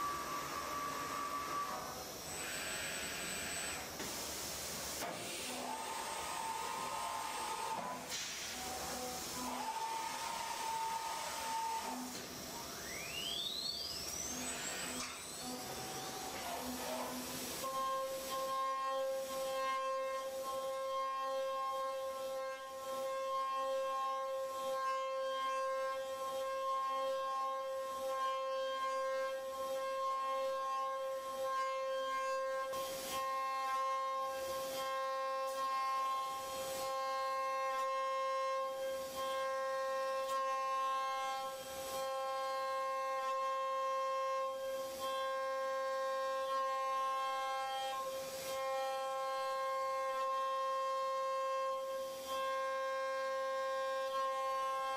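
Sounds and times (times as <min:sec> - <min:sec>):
router spindle high whine: 0:00.0 - 0:18.4.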